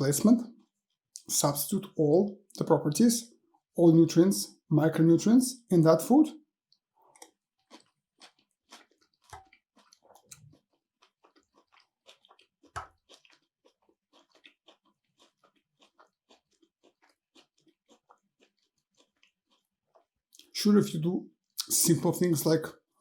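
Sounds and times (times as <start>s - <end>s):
moist chewing clicks: 6.7s - 20.5s.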